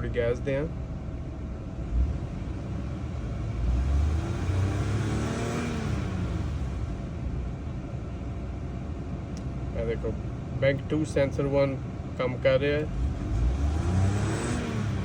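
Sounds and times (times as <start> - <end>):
car engine revving: 1.6 - 7.4, 12.8 - 15.0.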